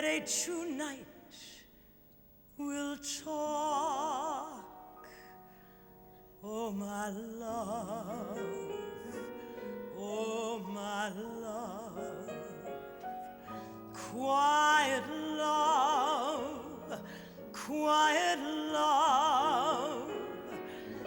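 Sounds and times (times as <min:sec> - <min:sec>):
person singing with vibrato: 0:00.0 - 0:01.9, 0:02.5 - 0:21.0
slow ballad accompaniment: 0:04.2 - 0:21.0.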